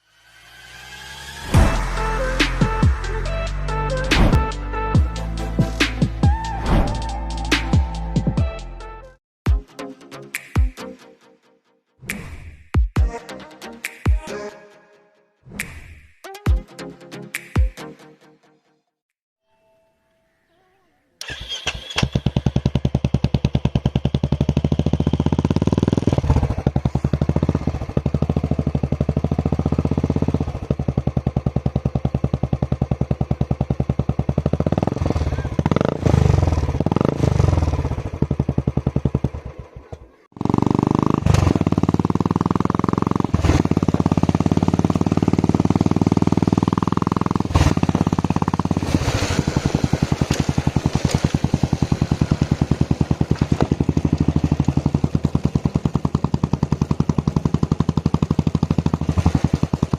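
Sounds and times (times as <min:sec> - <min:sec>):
motorcycle engine idling and revving: 0:00.0 - 0:09.1, 0:21.2 - 0:59.9.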